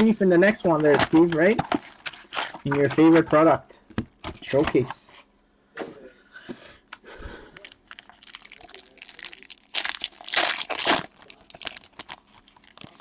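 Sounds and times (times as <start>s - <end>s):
foil wrapper crinkling and tearing: 0.8s - 3.1s, 7.6s - 13.0s.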